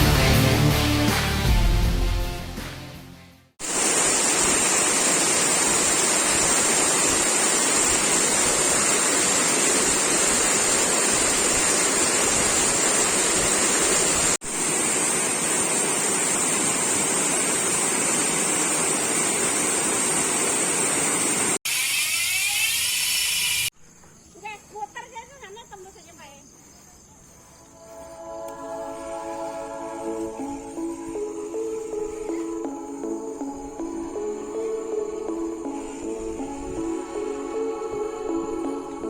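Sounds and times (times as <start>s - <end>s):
flowing water rushing: 3.6s - 21.5s.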